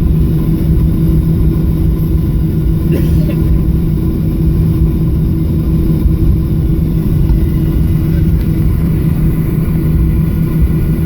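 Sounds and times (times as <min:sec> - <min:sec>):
airliner cabin rumble: 0:00.0 - 0:11.0
jet engine hum: 0:00.0 - 0:11.0.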